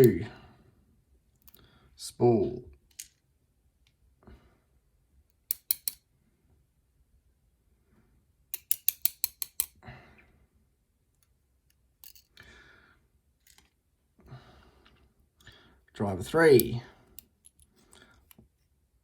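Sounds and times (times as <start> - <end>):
sharp metallic clicks: 5.5 - 6.0, 8.6 - 9.7
soft handling noise: 13.4 - 13.8.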